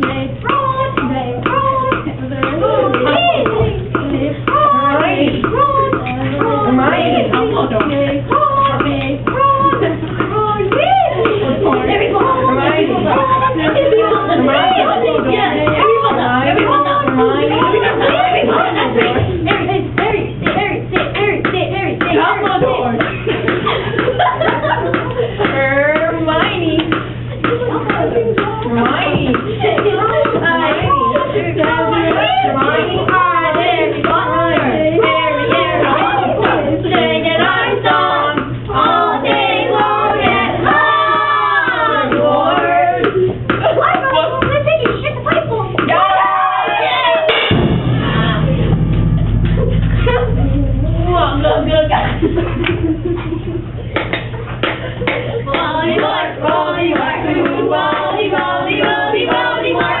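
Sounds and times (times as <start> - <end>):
children singing together: 0.0 - 26.8, 27.4 - 43.1, 55.0 - 60.0.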